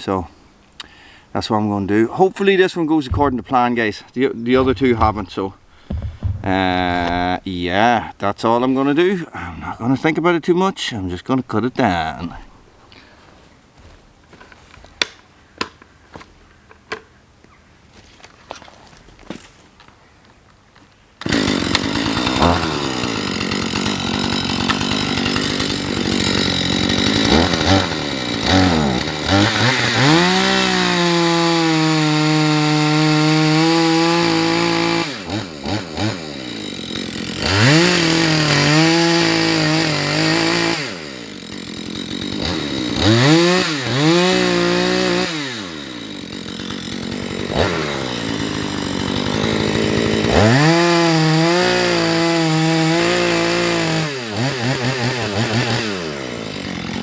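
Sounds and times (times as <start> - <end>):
chainsaw cutting into tree: 3.0 - 8.1, 21.2 - 57.0.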